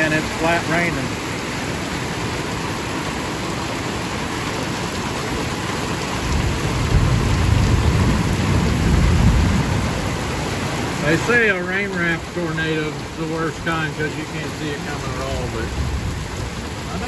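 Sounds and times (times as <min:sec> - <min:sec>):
heavy rain on a roof: 0:00.0 - 0:17.0.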